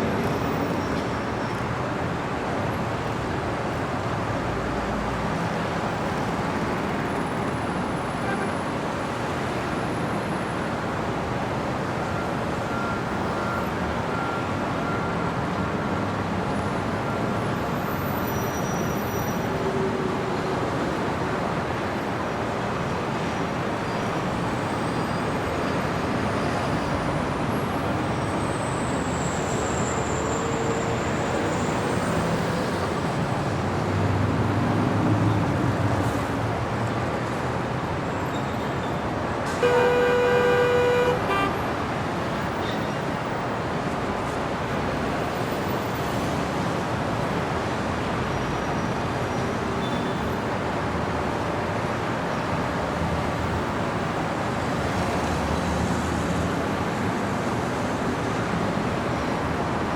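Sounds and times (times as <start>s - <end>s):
city street traffic: 0.0s - 59.9s.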